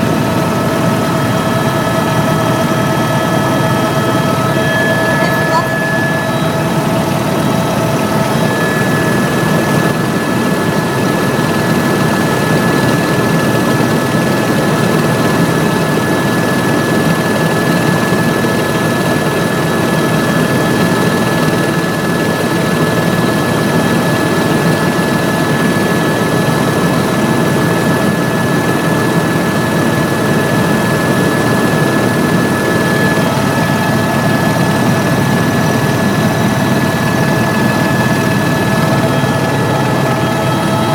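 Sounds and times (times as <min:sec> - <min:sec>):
helicopter engine and rotor drone: 0:00.0 - 0:40.9
high whine: 0:00.4 - 0:10.8.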